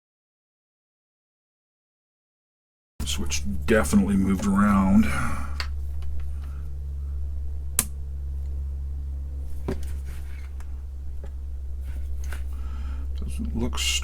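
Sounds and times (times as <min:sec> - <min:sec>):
low electrical hum: 0:03.0 - 0:14.0.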